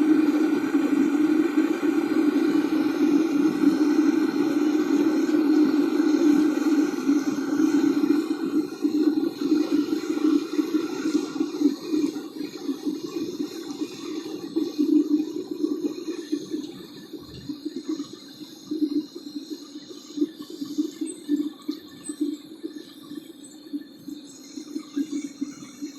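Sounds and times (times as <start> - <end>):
furnace burner roaring: 0.0 - 16.0.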